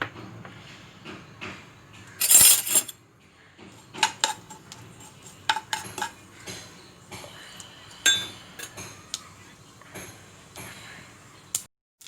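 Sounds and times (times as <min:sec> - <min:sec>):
spoon clinking against pan: 0:03.9 - 0:06.6, 0:07.9 - 0:09.0.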